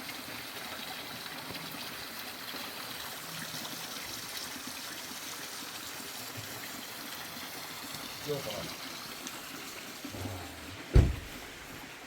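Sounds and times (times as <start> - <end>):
rain falling: 6.3 - 12.0.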